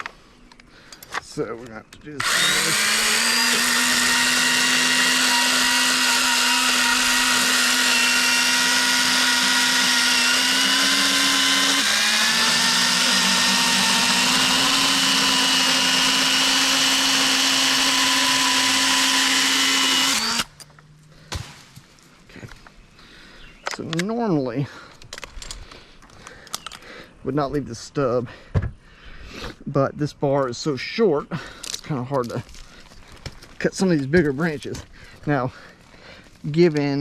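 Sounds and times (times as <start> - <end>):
electric saw cutting branch: 2.2 - 20.6.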